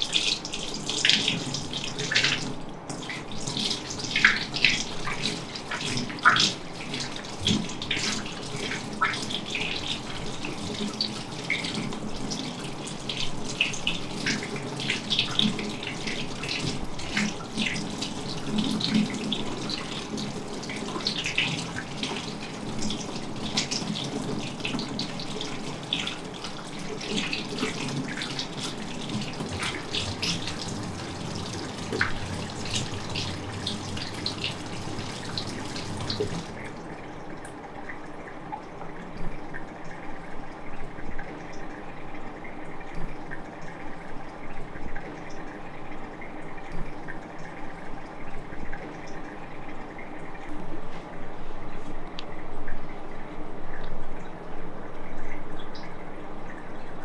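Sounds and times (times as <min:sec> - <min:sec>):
tap water running and splashing: 0:00.0 - 0:51.2
faint water drips: 0:00.0 - 0:57.0.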